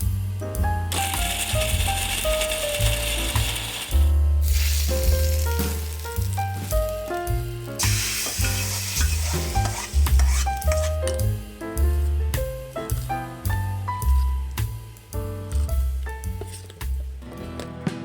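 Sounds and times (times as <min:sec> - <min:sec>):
background music with bass: 0:00.0 - 0:18.0
food sizzling in hot oil: 0:00.9 - 0:11.4.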